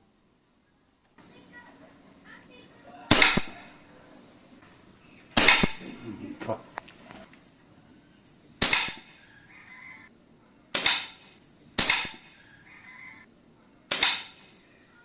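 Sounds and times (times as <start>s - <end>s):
air rifle shots: 3.1s - 3.8s, 5.3s - 6.2s, 8.6s - 9.2s, 10.7s - 12.4s, 13.9s - 14.6s.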